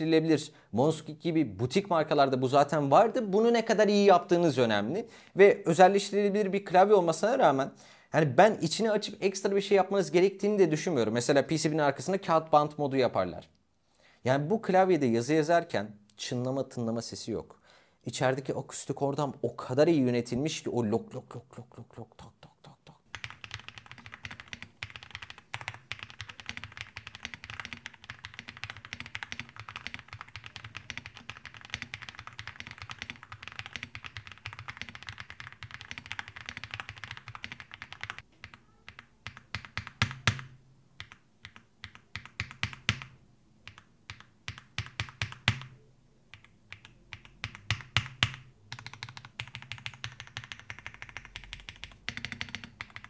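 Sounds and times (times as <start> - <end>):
mechanical keyboard typing: 23.1 - 53.0.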